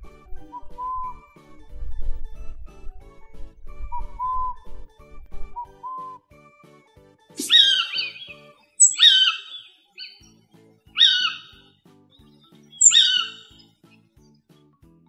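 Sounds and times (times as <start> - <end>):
light background music: 0.0 - 15.0
bird call sliding down: 7.4 - 9.6.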